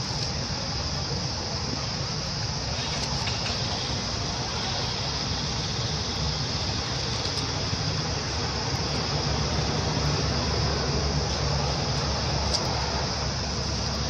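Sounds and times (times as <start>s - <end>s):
faint clicks: 12.4s - 12.8s.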